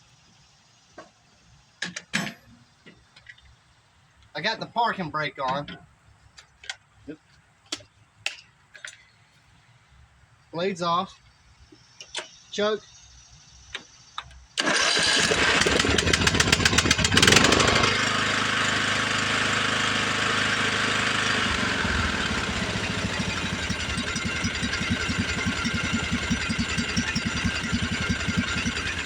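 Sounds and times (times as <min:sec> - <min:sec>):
lawn tractor engine running: 0:14.6 - 0:29.0
starter cranking engine: 0:14.6 - 0:29.0.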